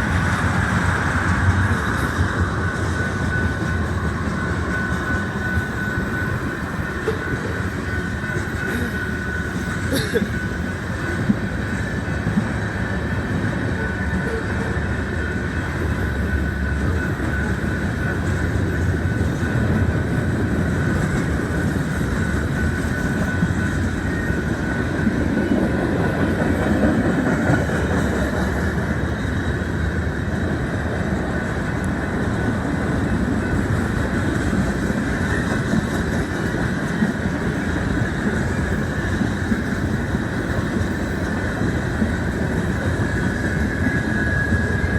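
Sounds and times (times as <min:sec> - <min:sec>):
freight train wheels rolling: 0:00.0 - 0:44.9.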